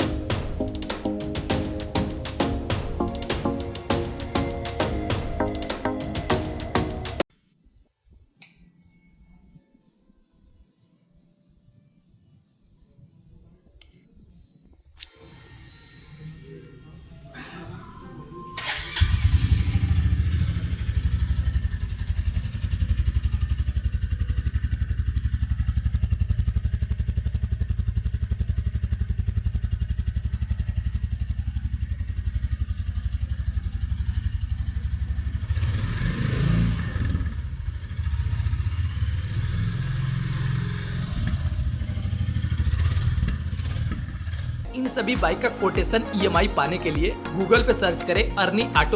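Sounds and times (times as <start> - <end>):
motorcycle exhaust idling: 19.3 - 44.6.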